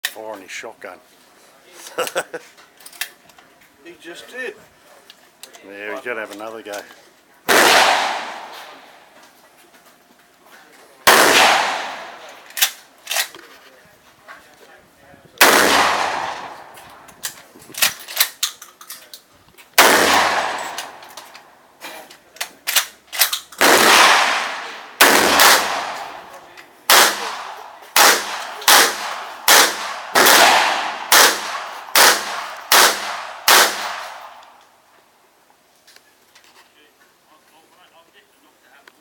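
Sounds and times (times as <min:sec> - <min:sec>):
shotgun shots echoing: 0:07.5 - 0:09.1, 0:11.1 - 0:12.7, 0:15.4 - 0:16.9, 0:19.8 - 0:21.1, 0:23.6 - 0:34.4.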